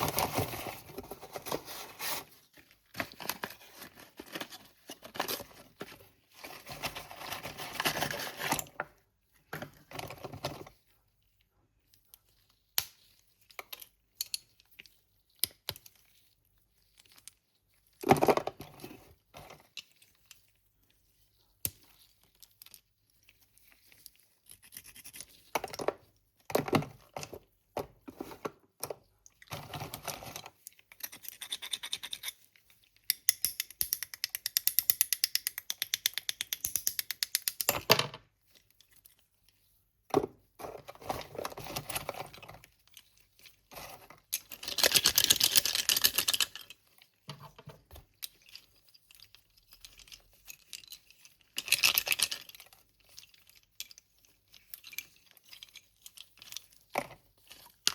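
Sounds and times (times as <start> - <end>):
packaging crinkling and scraping: 0.0 - 9.0, 40.3 - 57.9.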